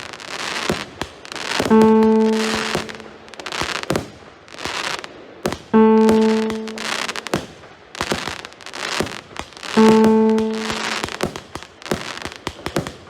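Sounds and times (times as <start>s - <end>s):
fireworks firing with crackling pops: 0.0s - 13.0s
background music: 1.7s - 3.2s, 5.8s - 7.3s, 9.8s - 11.2s
held keyboard note: 1.7s - 3.3s, 5.8s - 7.3s, 9.8s - 11.2s.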